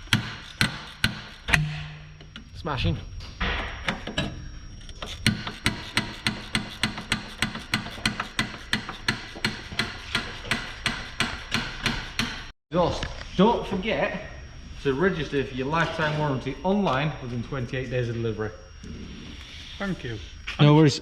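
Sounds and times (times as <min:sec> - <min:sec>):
hammer blows on metal exhaust: 0:00.0 - 0:02.4.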